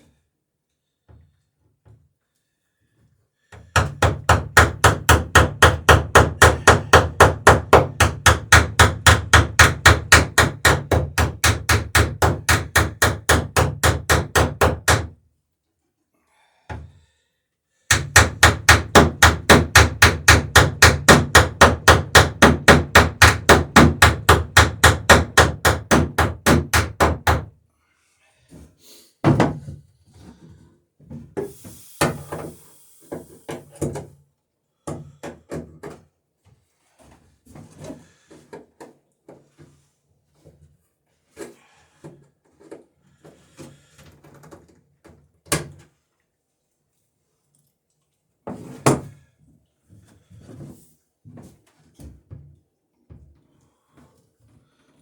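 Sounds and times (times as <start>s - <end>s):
hammer striking rivets: 17.9s - 27.4s.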